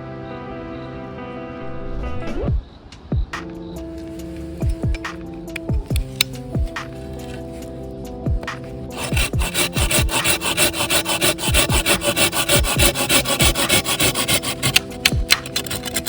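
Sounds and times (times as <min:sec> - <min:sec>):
music with bass beat: 0:03.2 - 0:07.0
hand saw cutting wood: 0:08.9 - 0:16.0.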